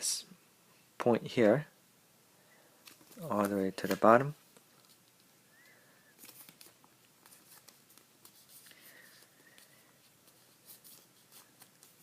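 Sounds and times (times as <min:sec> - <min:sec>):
paper being folded and creased: 0:06.2 - 0:12.0.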